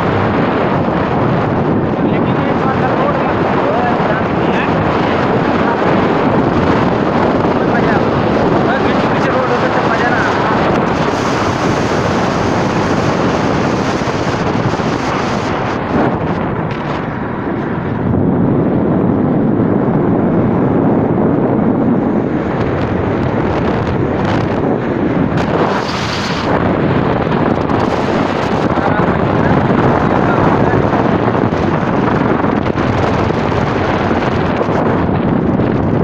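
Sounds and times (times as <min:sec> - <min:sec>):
moving vehicle road noise: 0:00.0 - 0:36.0
wind buffeting microphone: 0:00.0 - 0:36.0.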